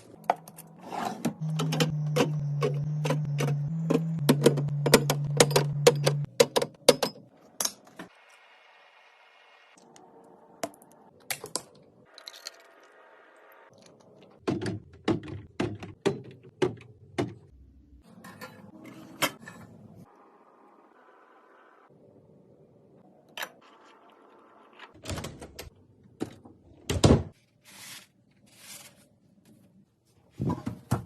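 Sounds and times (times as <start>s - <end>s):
kitchen items clicking and clattering: 13.9s - 17.5s.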